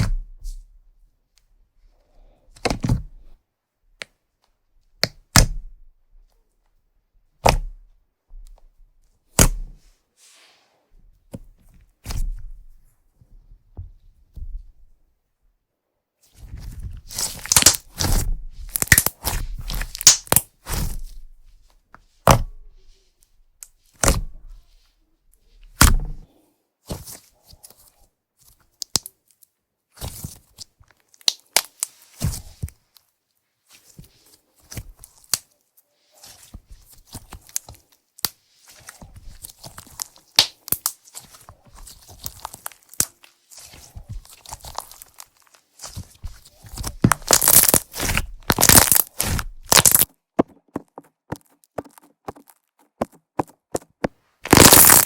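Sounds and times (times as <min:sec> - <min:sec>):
slime crackling and popping: 0:17.1 - 0:20.9, 0:31.1 - 0:32.0, 0:39.4 - 0:46.0, 0:46.7 - 0:50.1, 0:54.5 - 0:55.0.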